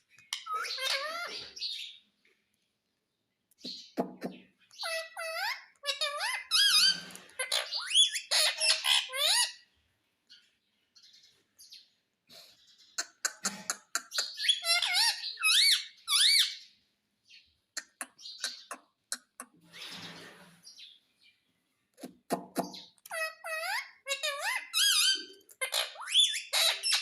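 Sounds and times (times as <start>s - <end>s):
parakeet squawking: 0.3s - 1.9s, 3.7s - 9.6s, 13.0s - 16.6s, 17.8s - 20.0s, 22.4s - 27.0s.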